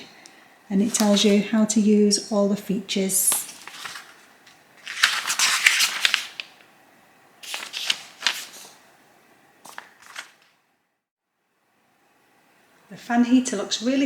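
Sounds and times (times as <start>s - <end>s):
packaging rustling: 0.8s - 1.4s, 3.2s - 6.7s, 7.4s - 8.8s, 9.6s - 10.5s.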